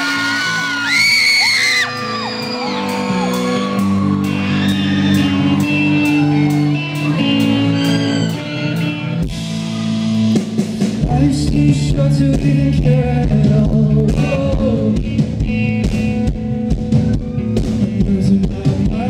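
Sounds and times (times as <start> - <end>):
concert audience screaming: 0.0 - 10.7, 16.9 - 18.3
live rock band playing: 0.0 - 19.0.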